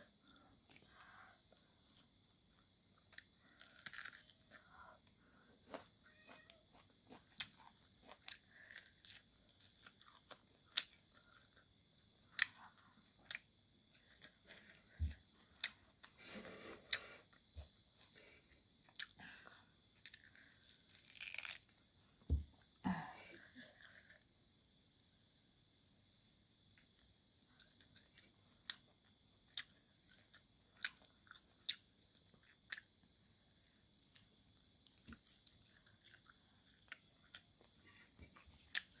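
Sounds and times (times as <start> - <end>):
crickets chirping: 0.0 - 39.0
mouth clicks and smacks eating: 27.6 - 33.1.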